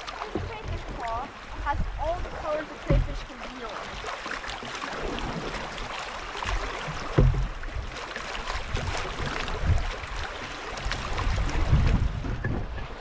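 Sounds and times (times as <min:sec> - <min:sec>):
rushing river water: 0:00.0 - 0:13.0
dull low thumps: 0:00.1 - 0:03.4, 0:06.5 - 0:08.0, 0:08.6 - 0:10.2, 0:10.9 - 0:13.0.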